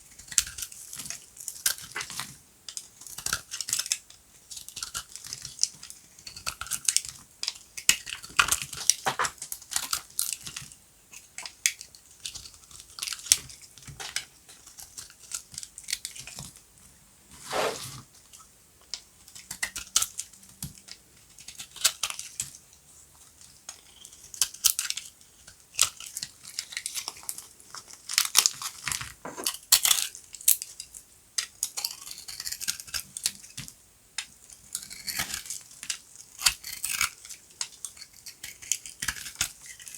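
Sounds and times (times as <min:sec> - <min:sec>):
knife cutting dry soap: 0:17.4 - 0:18.0
knife scraping through soap: 0:17.4 - 0:18.0.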